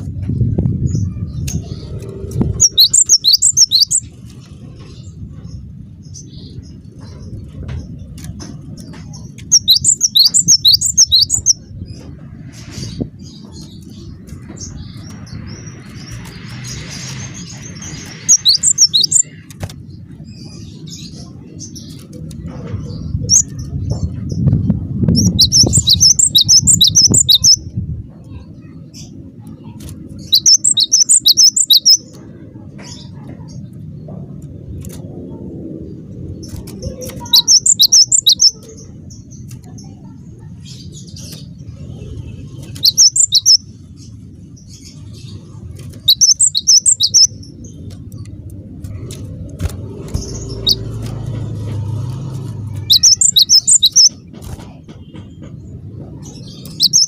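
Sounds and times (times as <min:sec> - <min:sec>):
low rumble: 0:00.0 - 0:57.0
bird singing rapid high notes: 0:01.2 - 0:04.1, 0:09.4 - 0:11.7, 0:12.9 - 0:19.6, 0:25.1 - 0:27.7, 0:30.2 - 0:32.0, 0:36.4 - 0:38.7, 0:42.5 - 0:43.6, 0:45.9 - 0:47.7, 0:50.0 - 0:54.2, 0:56.5 - 0:57.0.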